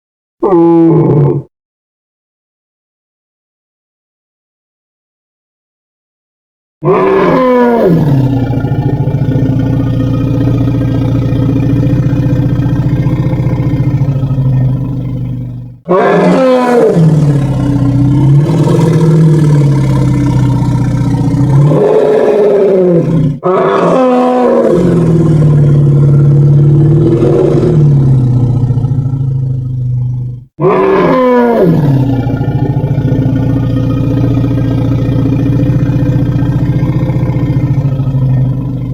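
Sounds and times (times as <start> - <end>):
cartoon dinosaur calls: 30.6 - 31.8.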